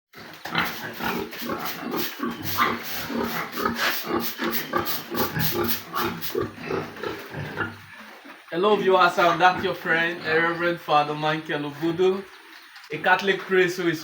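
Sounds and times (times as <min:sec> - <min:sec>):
pigs grunting: 0:00.2 - 0:13.5.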